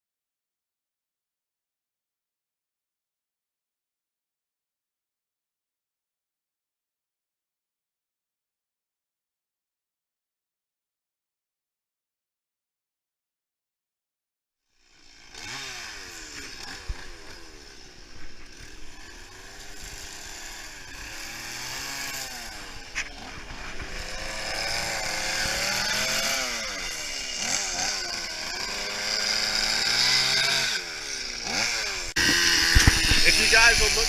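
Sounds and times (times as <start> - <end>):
chainsaw revving cutting wood: 14.8 - 34.0.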